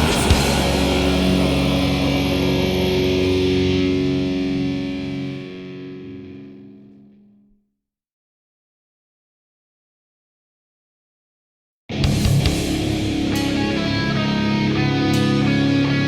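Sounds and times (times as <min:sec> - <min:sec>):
drums: 0:00.0 - 0:04.8, 0:11.9 - 0:16.0
distorted electric guitar chord: 0:00.0 - 0:07.5, 0:11.9 - 0:16.0.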